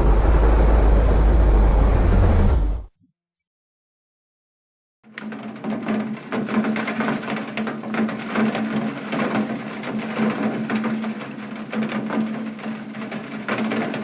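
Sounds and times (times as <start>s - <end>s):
steady low hum: 0.0s - 2.9s
rain on a hard surface: 5.2s - 14.0s.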